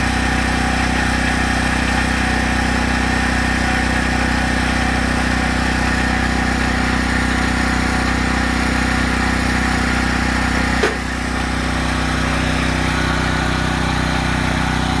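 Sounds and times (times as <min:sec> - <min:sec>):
motor humming: 0:08.1 - 0:15.0.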